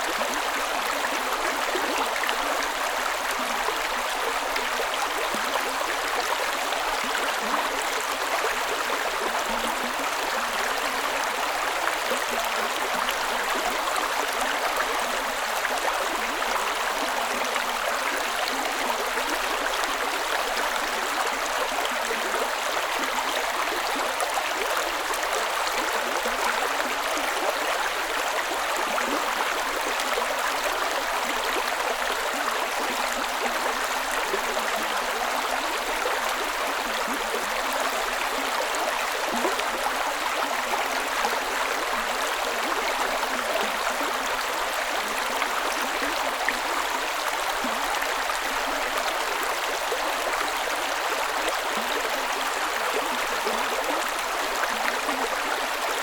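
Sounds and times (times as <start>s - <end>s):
creek running over rocks: 0.0s - 56.0s.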